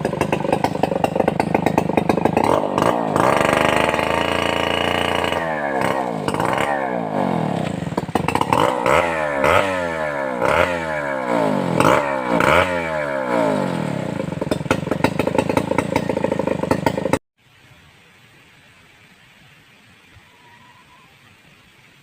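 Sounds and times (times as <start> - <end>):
chainsaw running at high revs: 0.0 - 17.2.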